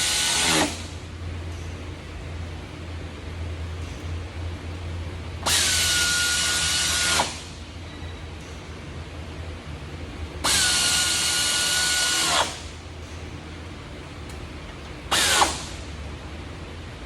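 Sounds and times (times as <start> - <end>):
power drill whining: 5.4 - 7.5, 10.4 - 12.7, 15.1 - 15.8.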